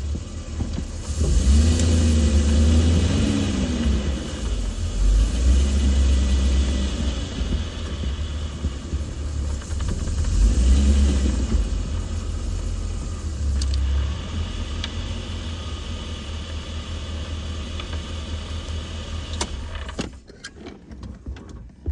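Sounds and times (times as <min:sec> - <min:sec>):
pickup truck engine rumble: 0:00.0 - 0:21.9
sharp clicks: 0:13.4 - 0:14.0.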